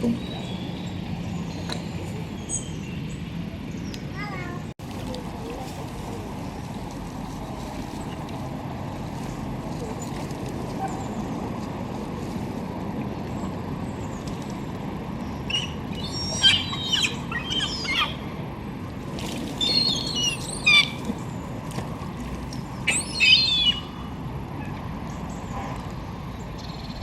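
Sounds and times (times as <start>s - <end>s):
birds chirping: 0.0s - 4.7s, 13.4s - 18.6s, 19.6s - 24.2s.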